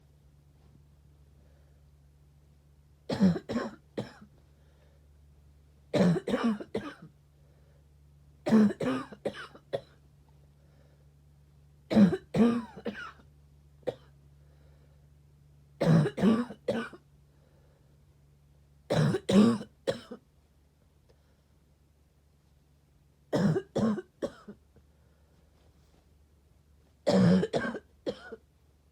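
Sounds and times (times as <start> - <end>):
person coughing: 3.1 - 4.3, 6.0 - 7.1, 8.5 - 10.0, 11.9 - 13.2, 13.9 - 14.1, 15.8 - 17.0, 18.9 - 20.2, 23.3 - 24.6, 27.1 - 28.4.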